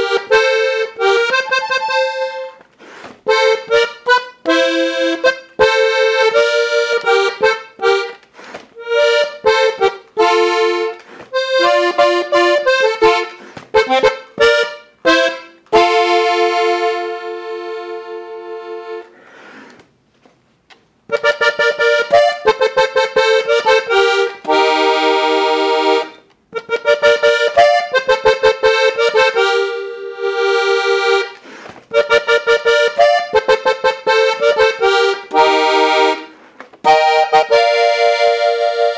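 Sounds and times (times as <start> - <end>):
button accordion playing: 0.0 - 19.8, 21.1 - 38.9.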